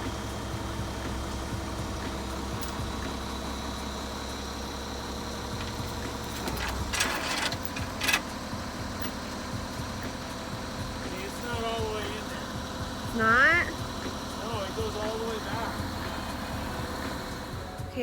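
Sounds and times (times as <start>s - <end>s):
loader engine idling: 0.0s - 18.0s
metallic clatter: 5.3s - 12.3s.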